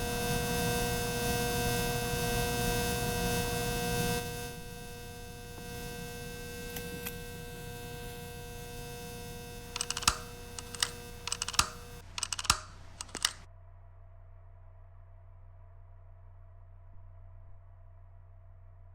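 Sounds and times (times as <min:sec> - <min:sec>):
ceiling fan motor humming: 0:00.0 - 0:13.4
sharp clicks and knocks: 0:09.6 - 0:13.4.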